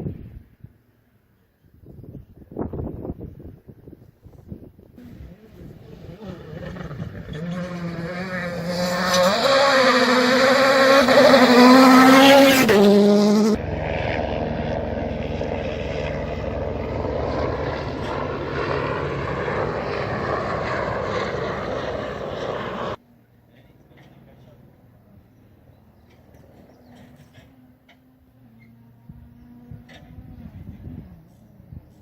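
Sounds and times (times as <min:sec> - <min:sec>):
rally car engine revving: 0:05.0 - 0:23.0, 0:26.0 - 0:32.0.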